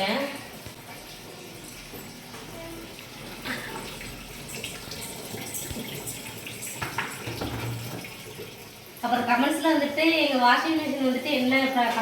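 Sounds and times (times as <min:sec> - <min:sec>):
washing machine filling with water: 0:00.0 - 0:12.0.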